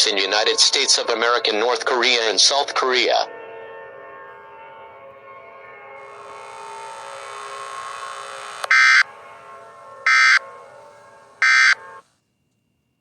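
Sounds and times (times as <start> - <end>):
electronic drone of steady tones: 5.6 - 12.0
harsh digital data tone bursts: 6.1 - 9.1, 9.9 - 10.4, 11.4 - 11.8.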